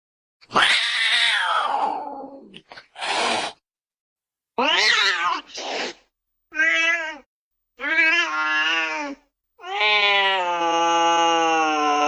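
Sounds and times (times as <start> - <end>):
cat meowing: 0.5 - 2.5, 4.6 - 5.5, 6.5 - 12.0.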